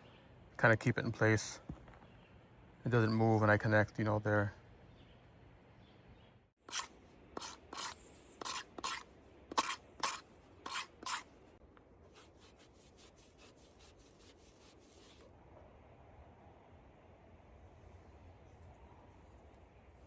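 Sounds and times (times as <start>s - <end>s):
hand tool scraping dirt: 6.6s - 15.3s.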